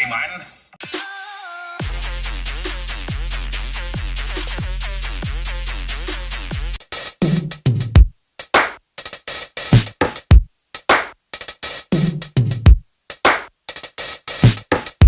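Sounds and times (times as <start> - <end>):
electronic dance music: 0.0 - 6.8
drum machine beat: 1.8 - 15.0
deep kick drums: 7.9 - 8.1, 12.5 - 12.8.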